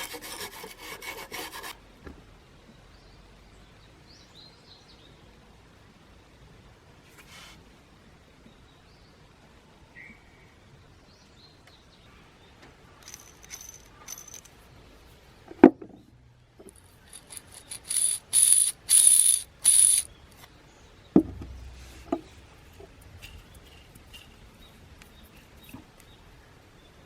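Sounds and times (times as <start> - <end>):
metal parts clinking and rattling: 13.0 - 14.6, 16.6 - 20.1
sharp knock: 21.2 - 23.0.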